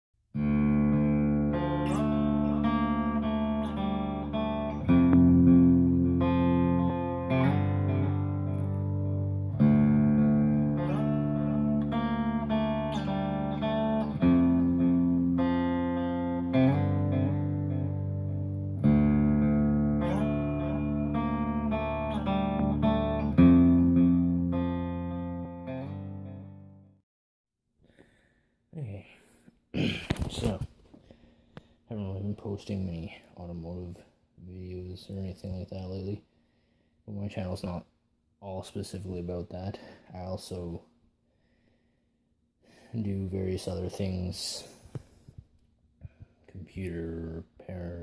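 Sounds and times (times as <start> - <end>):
guitar picked notes and chords: 0.3 - 27.0.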